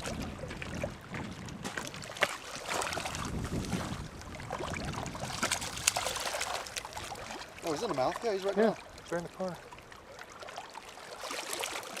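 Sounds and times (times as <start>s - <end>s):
wind on microphone: 0.0s - 7.5s
water splashing and sloshing: 0.0s - 12.0s.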